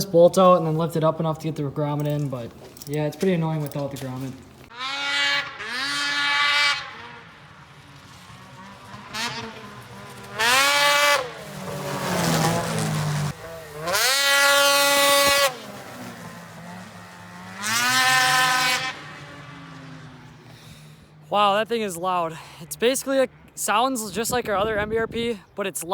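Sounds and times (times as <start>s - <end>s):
snowmobile engine revving: 4.0s - 22.0s.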